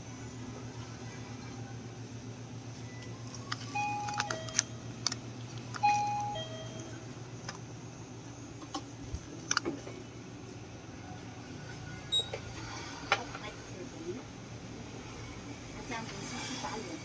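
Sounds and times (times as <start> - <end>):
steady low hum: 0.0 - 17.0
electronic ding-dong chime: 3.8 - 4.7, 5.8 - 7.0.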